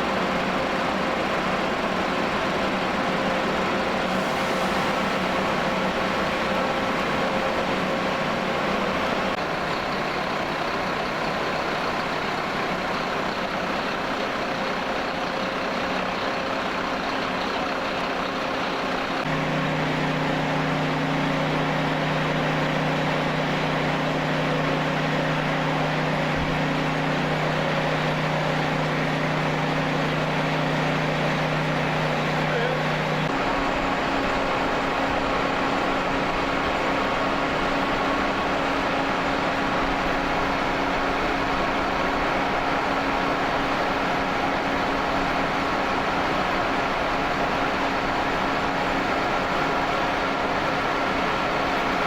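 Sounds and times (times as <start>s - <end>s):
engines humming: 17.0s - 52.0s.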